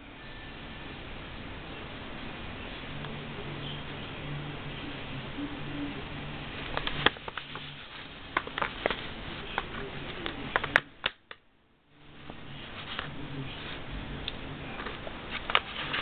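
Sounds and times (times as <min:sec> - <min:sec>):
steady background hiss: 0:00.0 - 0:16.0.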